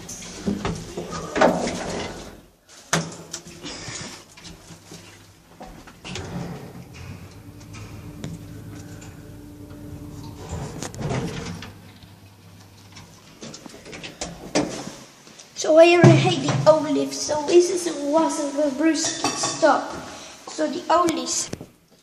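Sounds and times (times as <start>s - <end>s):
lift running hum: 5.3s - 14.5s
lift doors sliding: 5.9s - 13.3s.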